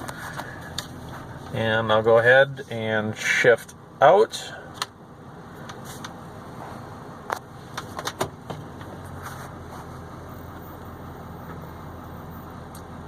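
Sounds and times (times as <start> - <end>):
sharp clicks of gear shifting: 0.0 - 1.6, 4.7 - 6.3, 7.2 - 9.8, 12.5 - 13.0
diesel engine running: 0.0 - 13.0.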